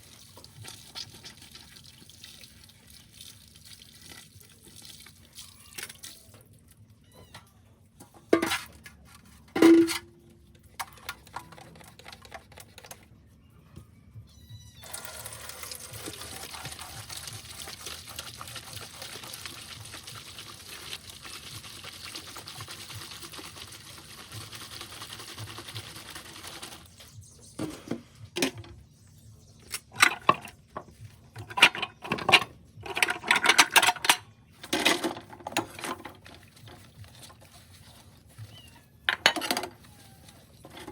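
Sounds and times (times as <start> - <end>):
tap water running: 0.0 - 5.4, 14.8 - 26.9
dishes clinking: 9.6 - 10.1
plates and cutlery clattering: 9.6 - 10.1, 39.1 - 39.7.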